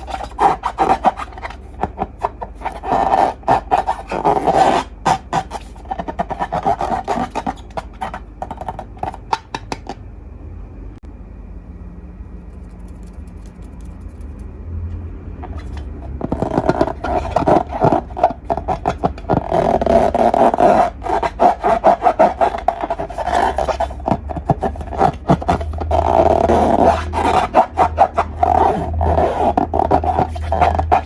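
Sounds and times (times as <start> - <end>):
sticky slime crackling and rubbing: 0.0 - 9.9, 15.5 - 31.0
low hum: 9.9 - 31.0.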